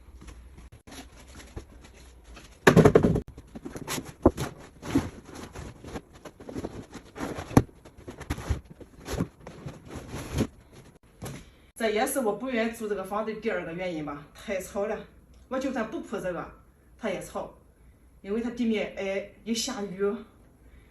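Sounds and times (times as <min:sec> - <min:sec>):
vinyl sheet crackling and rustling: 0:03.4 - 0:11.0.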